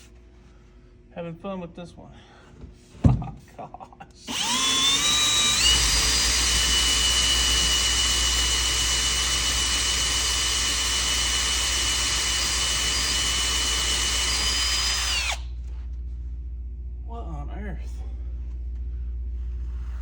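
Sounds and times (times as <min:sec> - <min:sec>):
electric drill boring into wood: 0:04.3 - 0:15.5.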